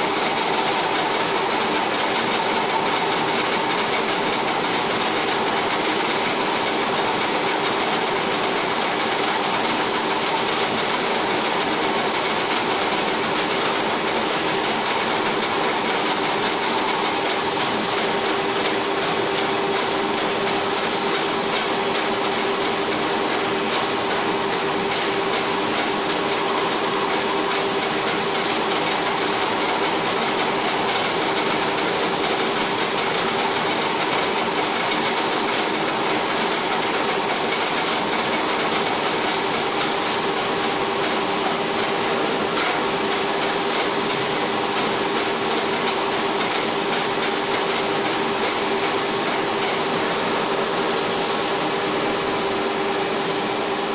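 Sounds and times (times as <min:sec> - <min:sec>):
lathe running with whine: 0:00.0 - 0:53.9.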